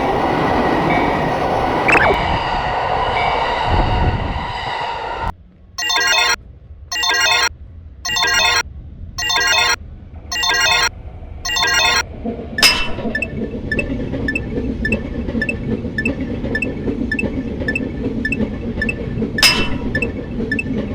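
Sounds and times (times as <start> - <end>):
train running past: 0.0 - 5.3, 13.1 - 20.9
electronic trilling ring tone: 5.8 - 7.5, 8.1 - 8.6, 9.2 - 10.9, 11.5 - 12.0, 12.6 - 20.9.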